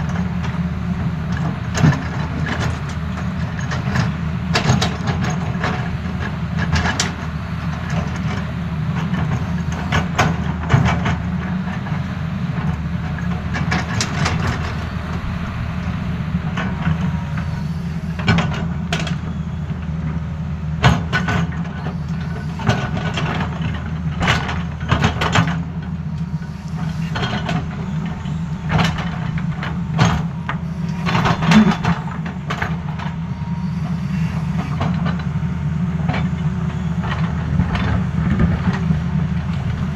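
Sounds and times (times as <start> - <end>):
excavator diesel engine running: 0.0 - 39.9
machine knocks and clanks: 12.6 - 19.3.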